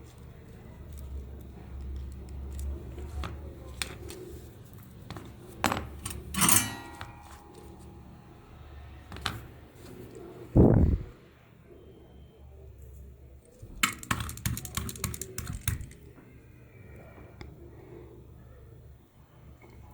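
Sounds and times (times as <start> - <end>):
light clicks and taps of tools: 0.8 - 4.2.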